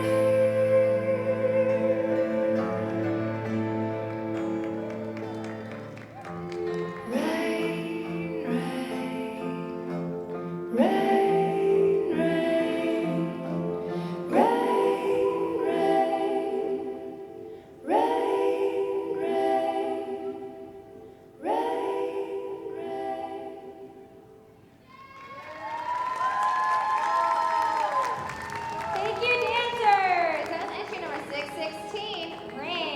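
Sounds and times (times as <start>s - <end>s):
slow song with singing: 0.0s - 4.8s, 6.5s - 24.8s.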